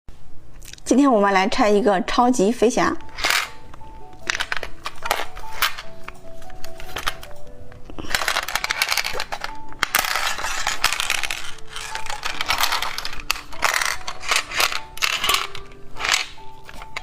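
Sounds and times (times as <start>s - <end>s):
light background music: 0.3s - 17.0s
plastic packaging crinkling: 4.2s - 17.0s.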